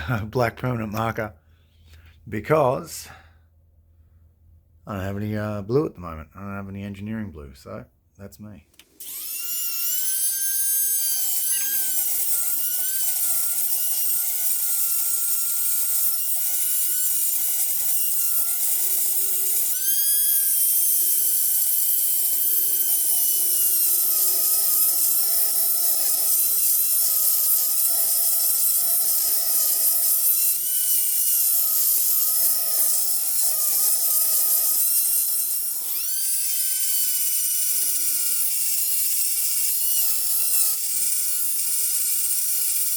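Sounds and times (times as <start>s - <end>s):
high-speed grinder whining: 9.0s - 42.9s.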